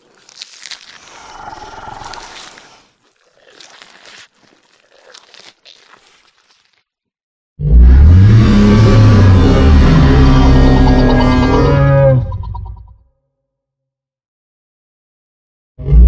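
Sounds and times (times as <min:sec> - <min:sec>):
dinosaur roar: 0:01.2 - 0:02.5, 0:07.6 - 0:12.8
rasping sounds: 0:08.0 - 0:12.5.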